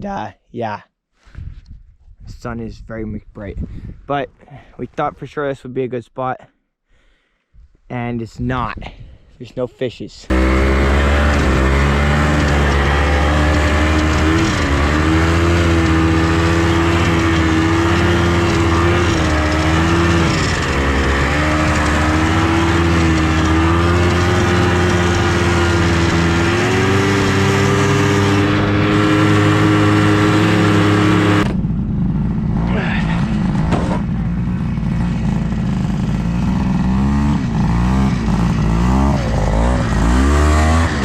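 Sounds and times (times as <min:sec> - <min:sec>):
snowmobile engine running: 0:10.3 - 0:41.0.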